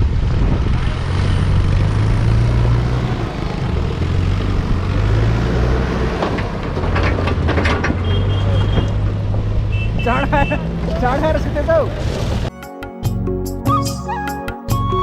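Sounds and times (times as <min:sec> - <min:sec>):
vehicle engine droning: 0:00.0 - 0:12.5
rattling: 0:06.1 - 0:08.1.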